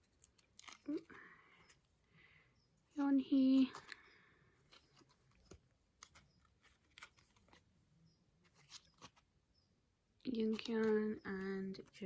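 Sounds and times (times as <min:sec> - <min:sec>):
cards clicking and rustling: 0:00.0 - 0:01.9, 0:03.1 - 0:07.8, 0:08.4 - 0:09.4, 0:10.2 - 0:12.0.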